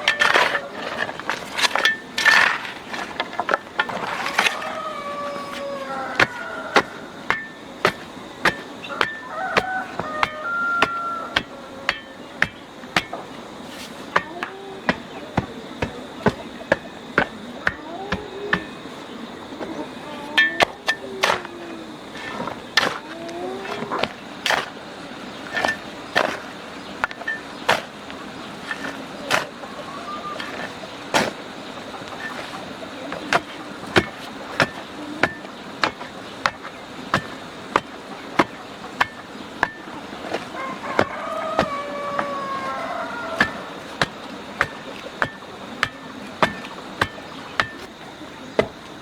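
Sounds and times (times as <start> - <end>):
tool striking wood: 43.4 - 47.9.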